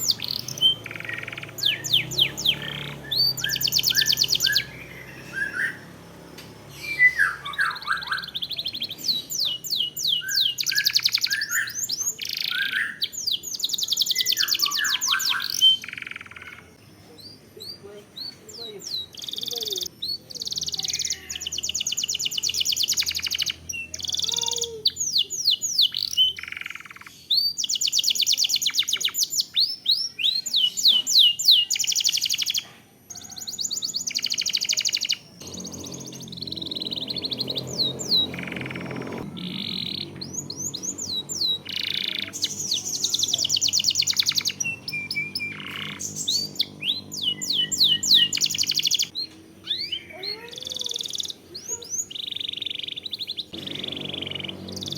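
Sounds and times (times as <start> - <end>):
canary singing trills: 0.0 - 54.9.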